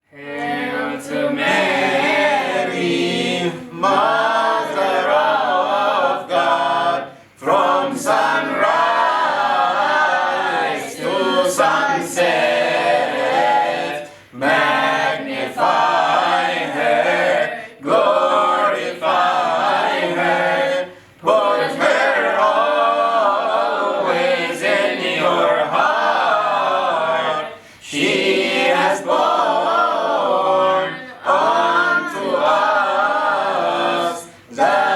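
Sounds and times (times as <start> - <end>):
children and adults singing a hymn: 0.0 - 34.9.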